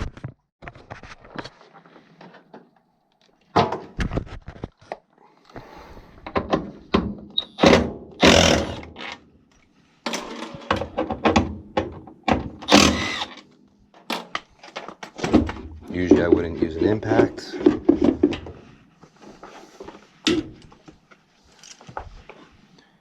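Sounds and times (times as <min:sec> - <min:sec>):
metal knocks and clunks: 0:06.2 - 0:08.6, 0:10.1 - 0:13.2.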